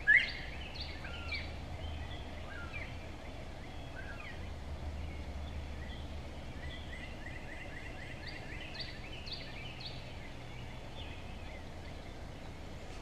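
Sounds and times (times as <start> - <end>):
birds chirping: 0.0 - 13.0
steady low hum: 0.0 - 13.0.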